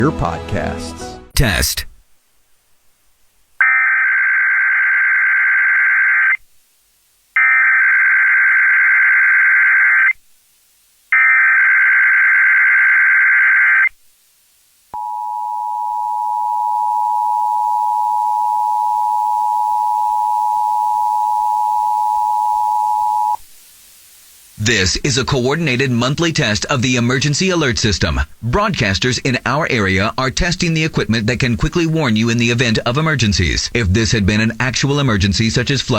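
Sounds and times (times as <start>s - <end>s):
steady two-tone attention signal: 15.0s - 23.4s.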